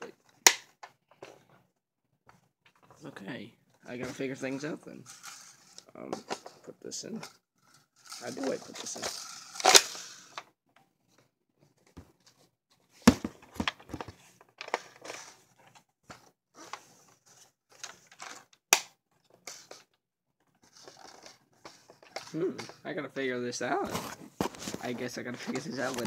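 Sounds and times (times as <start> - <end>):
plastic toy blaster clicks: 9.2 - 10.4.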